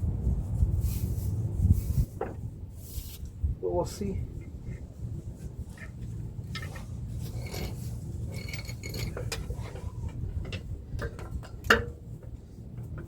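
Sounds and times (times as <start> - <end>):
metal tools clinking and scraping: 5.7 - 11.9.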